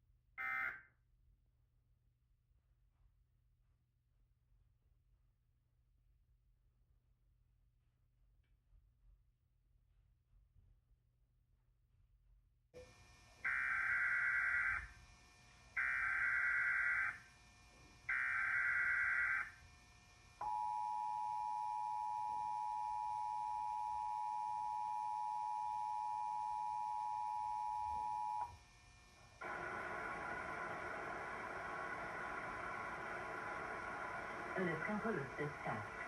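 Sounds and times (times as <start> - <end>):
hiss: 29.4 - 35.0.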